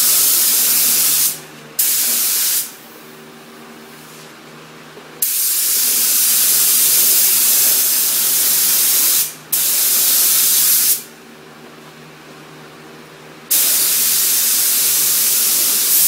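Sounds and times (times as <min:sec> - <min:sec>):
spray gun hissing: 0:00.0 - 0:02.8, 0:05.2 - 0:11.0, 0:13.5 - 0:16.0.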